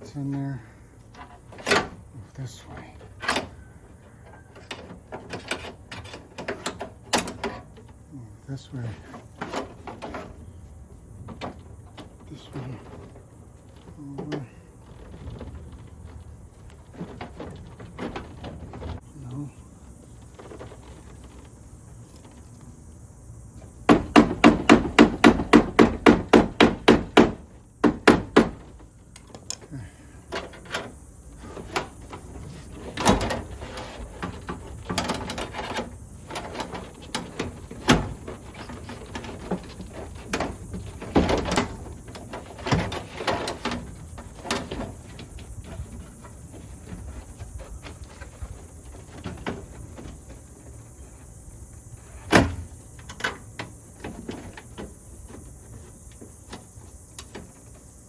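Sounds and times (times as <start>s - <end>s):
knocks and clicks of parts: 1.0s - 2.1s, 3.1s - 8.0s, 23.6s - 51.0s, 52.2s - 57.8s.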